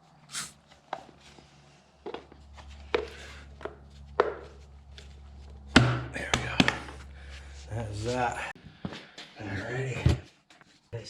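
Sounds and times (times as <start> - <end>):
low steady hum: 2.3 - 8.5.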